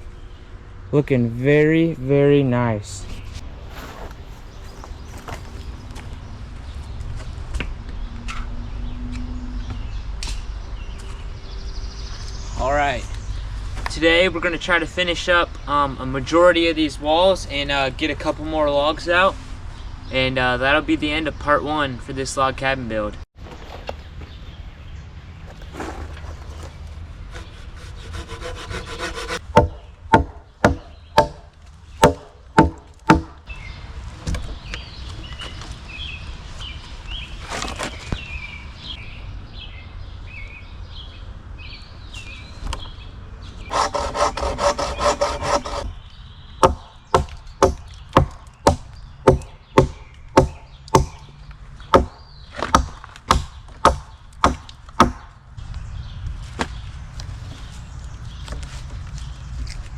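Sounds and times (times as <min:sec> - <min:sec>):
hand tool striking wood: 0:27.3 - 0:33.4, 0:43.7 - 0:45.9, 0:46.6 - 0:51.3, 0:51.9 - 0:55.3.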